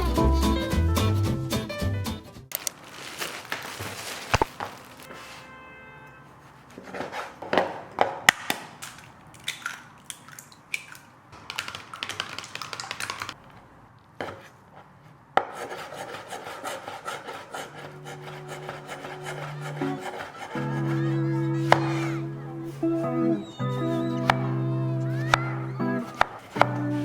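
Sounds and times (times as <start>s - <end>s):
rubbing strokes: 15.6s - 26.6s
faint background music: 20.6s - 27.0s.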